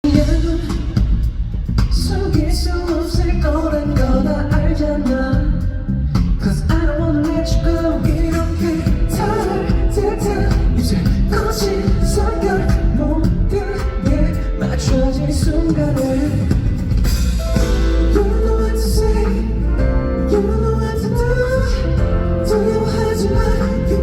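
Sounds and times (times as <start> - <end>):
loud live pop music: 0.0 - 24.0.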